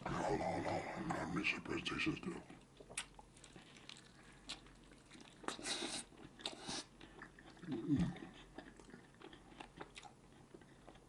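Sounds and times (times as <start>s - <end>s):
low voice sound: 0.0s - 2.5s
person biting and chewing: 2.8s - 11.0s.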